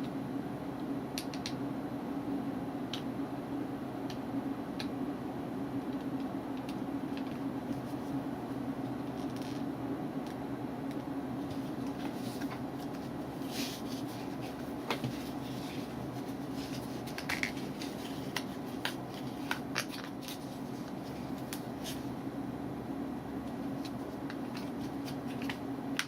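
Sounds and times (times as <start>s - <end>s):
steady low hum: 0.0s - 26.0s
objects clicking and rustling: 11.8s - 22.0s.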